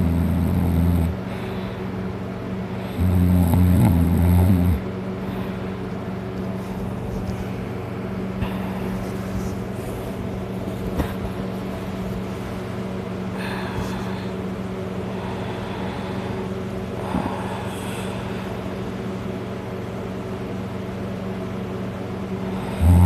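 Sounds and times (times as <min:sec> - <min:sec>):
loud rasping snore: 0:00.0 - 0:01.2, 0:02.9 - 0:04.8, 0:22.7 - 0:23.0
steady low hum: 0:00.0 - 0:23.0.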